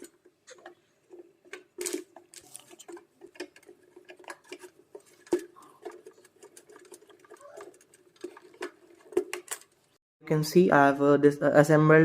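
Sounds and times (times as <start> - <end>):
metal parts clicking and tapping: 0.0 - 10.0.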